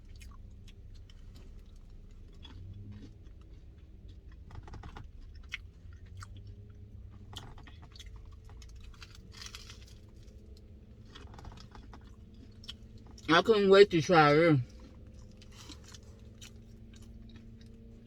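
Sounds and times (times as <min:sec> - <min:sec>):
chewing with mouth sounds: 0:00.0 - 0:13.3, 0:14.0 - 0:18.0
low steady hum: 0:05.0 - 0:18.0.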